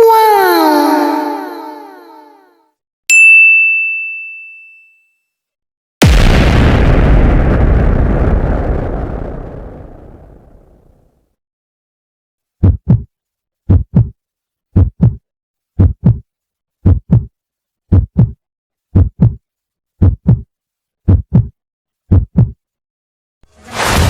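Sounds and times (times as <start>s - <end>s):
heartbeat thumps: 12.6s - 13.1s, 13.7s - 14.1s, 14.8s - 15.2s, 15.8s - 16.2s, 16.8s - 17.3s, 17.9s - 18.4s, 19.0s - 19.4s, 20.0s - 20.5s, 21.1s - 21.5s, 22.1s - 22.6s.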